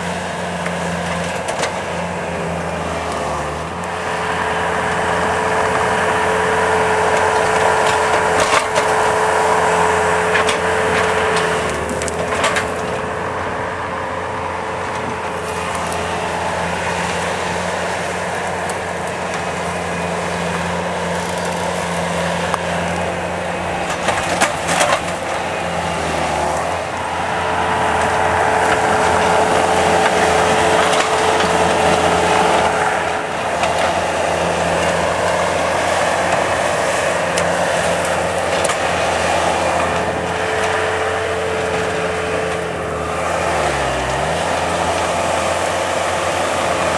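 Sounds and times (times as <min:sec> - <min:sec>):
loader engine running under load: 0:00.0 - 0:46.9
wood cracking: 0:10.3 - 0:13.0, 0:14.9 - 0:26.8.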